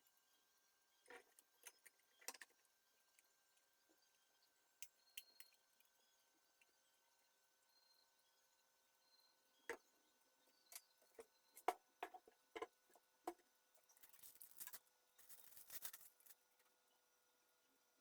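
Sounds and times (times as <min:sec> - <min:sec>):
rustling and scraping: 0:13.9 - 0:16.4.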